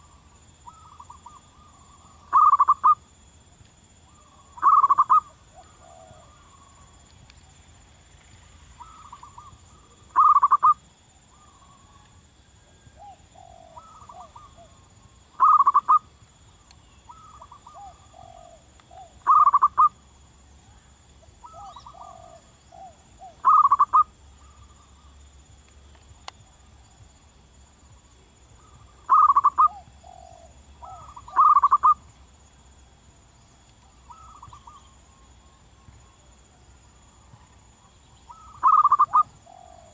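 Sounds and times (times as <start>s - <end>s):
dove cooing: 0.7s - 3.0s, 4.1s - 6.6s, 8.8s - 10.8s, 12.7s - 14.8s, 15.4s - 16.1s, 17.1s - 19.9s, 21.4s - 24.6s, 28.6s - 32.0s, 34.1s - 34.9s, 38.3s - 39.9s.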